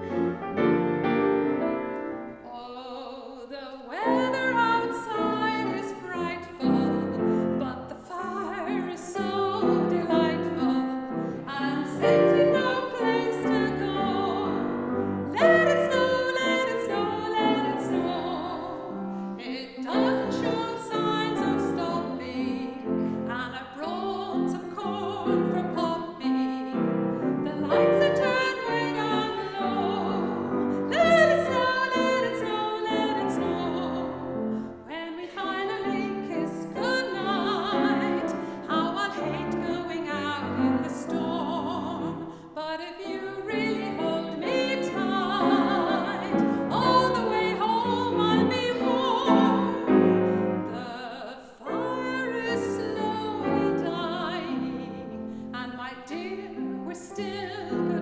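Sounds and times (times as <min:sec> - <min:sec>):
piano accompaniment: 0:00.0 - 0:02.6, 0:03.9 - 0:58.0
women singing with vibrato: 0:01.8 - 0:58.0.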